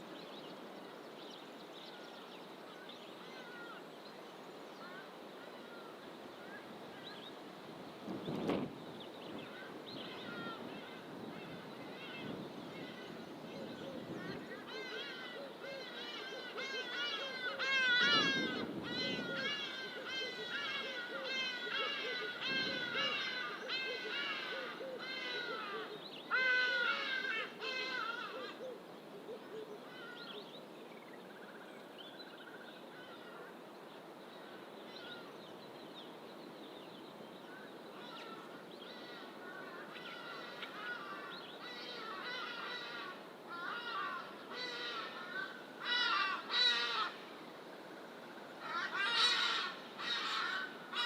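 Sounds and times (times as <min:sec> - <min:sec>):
steady background hiss: 0:00.0 - 0:51.0
birds harsh calls: 0:08.3 - 0:28.8, 0:37.2 - 0:47.4, 0:48.3 - 0:51.0.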